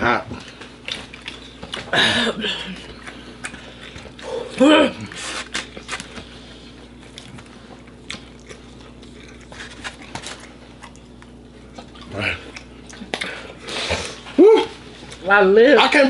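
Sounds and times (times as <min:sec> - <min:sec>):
people eating with mouth sounds: 0:00.0 - 0:15.2.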